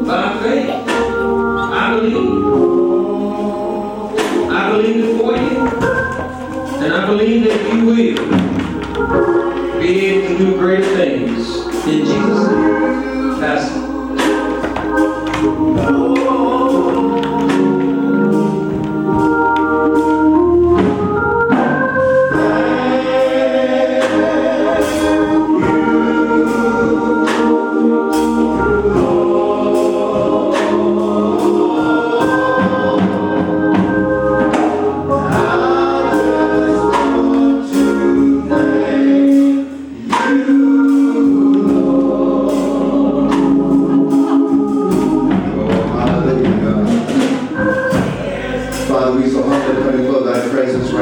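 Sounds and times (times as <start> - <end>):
gospel choir singing: 0.0 - 51.0
organ: 0.0 - 51.0
drum beat: 4.2 - 20.0, 20.8 - 27.6, 28.2 - 38.0, 41.2 - 51.0.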